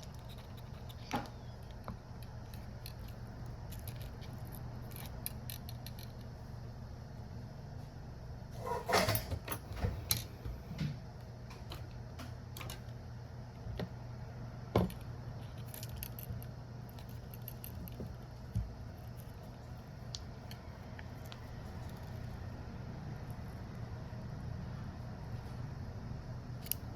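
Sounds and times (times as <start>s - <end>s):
steady low hum: 0.0s - 26.9s.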